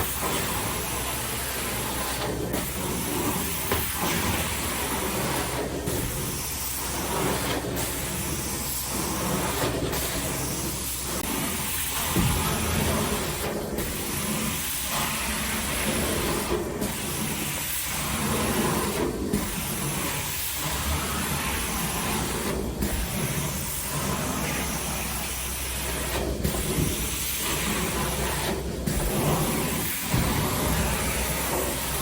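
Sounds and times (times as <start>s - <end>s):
steam cleaner spraying and sucking: 0.0s - 32.0s.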